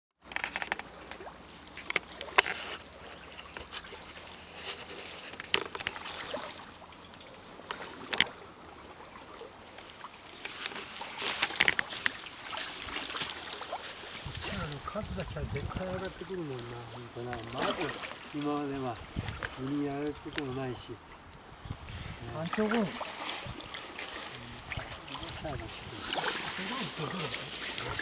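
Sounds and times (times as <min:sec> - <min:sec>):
pond water sloshing: 0:00.2 - 0:28.0
sharp splashes or knocks: 0:17.3 - 0:18.5, 0:22.5 - 0:28.0.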